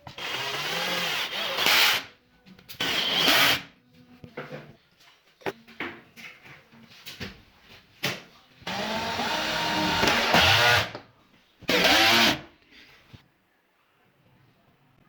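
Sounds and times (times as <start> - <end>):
electric power drill running: 8.7 - 10.9, 11.7 - 12.4.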